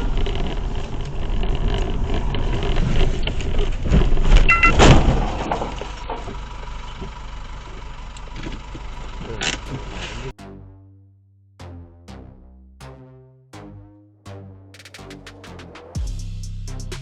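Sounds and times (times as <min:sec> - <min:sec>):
vehicle road and engine noise: 0:00.0 - 0:10.4
brief beep: 0:04.5 - 0:04.8.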